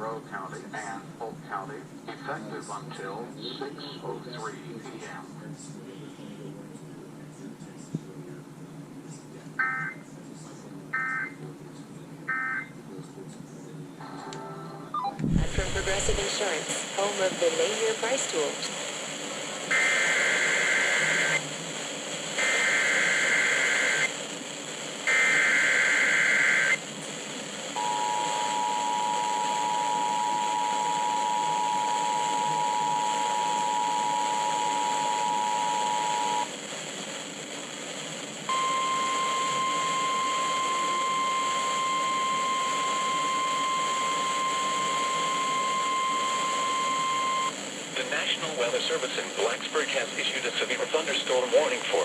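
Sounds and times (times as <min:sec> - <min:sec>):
radio hiss: 0:00.0 - 0:52.0
digital data bursts: 0:15.0 - 0:17.2, 0:22.4 - 0:24.2, 0:25.0 - 0:26.8
two-tone attention signal: 0:27.8 - 0:36.5, 0:38.5 - 0:47.5.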